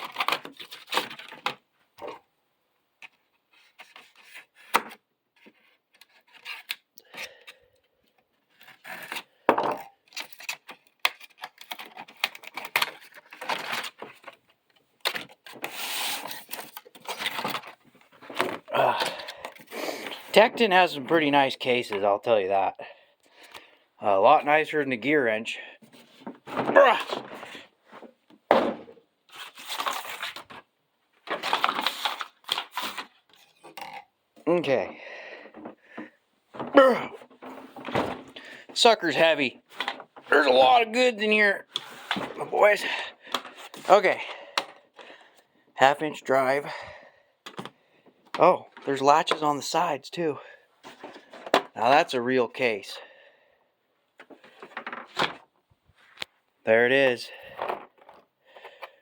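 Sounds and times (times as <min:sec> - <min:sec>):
packaging rustling and scraping: 0:00.0 - 0:01.6, 0:03.1 - 0:04.7, 0:05.4 - 0:07.5, 0:08.4 - 0:09.4, 0:10.0 - 0:21.1, 0:25.8 - 0:33.8, 0:35.5 - 0:44.7, 0:50.8 - 0:51.7
cardboard knocks and clicks: 0:28.3 - 0:29.0.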